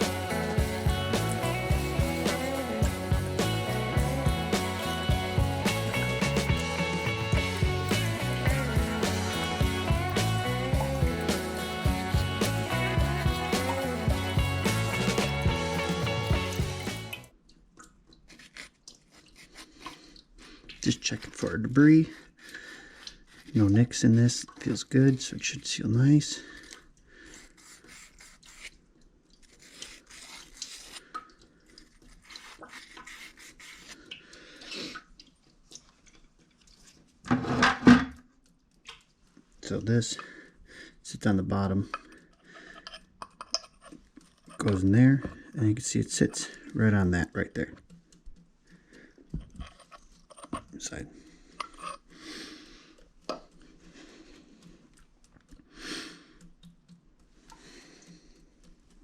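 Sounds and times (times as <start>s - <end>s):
metal scrape: 0.0s - 3.8s, 51.6s - 52.0s
faint clicks of small parts: 38.3s - 40.6s, 41.9s - 45.6s, 47.7s - 59.0s
light clicks and rubbing of parts: 47.8s - 52.1s.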